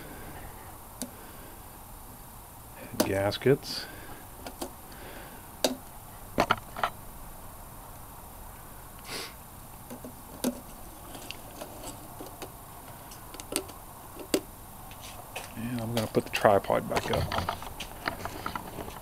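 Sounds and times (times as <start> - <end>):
short soft hiss: 9.0 - 9.4.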